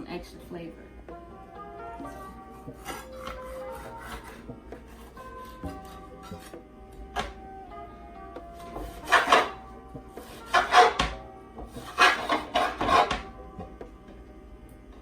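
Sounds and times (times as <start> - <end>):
background music: 0.0 - 15.0
knife chopping on cutting board: 2.8 - 6.6, 7.2 - 7.4, 8.7 - 9.6, 10.2 - 13.3.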